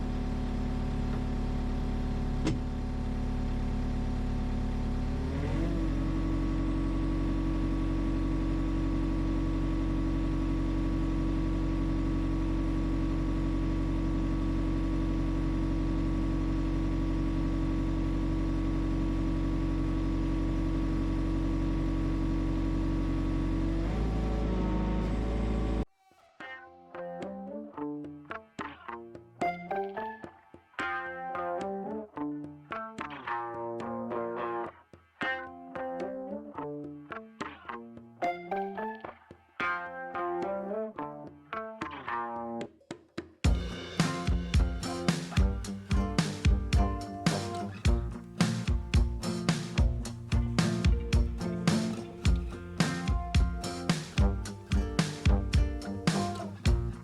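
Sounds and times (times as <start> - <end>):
vehicle engine running: 0.0 - 25.9, 43.5 - 57.0
musical notes: 43.5 - 57.0.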